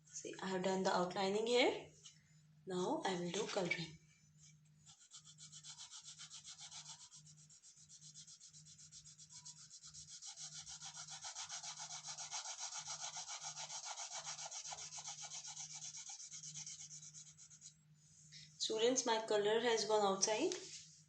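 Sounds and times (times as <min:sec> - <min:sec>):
scratchy colouring strokes on paper: 0:04.4 - 0:18.3.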